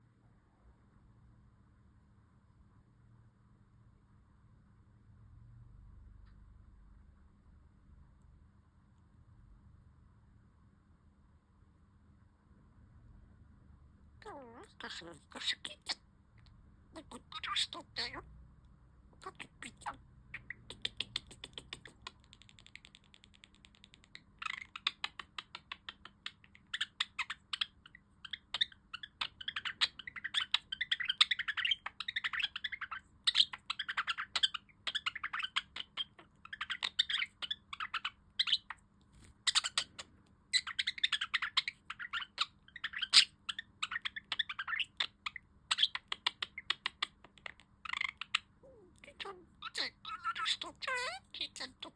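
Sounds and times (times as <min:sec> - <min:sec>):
budgerigar warbling: 0:14.2 - 0:16.0, 0:17.0 - 0:18.3, 0:19.2 - 0:22.9, 0:24.4 - 0:38.8, 0:39.4 - 0:51.9.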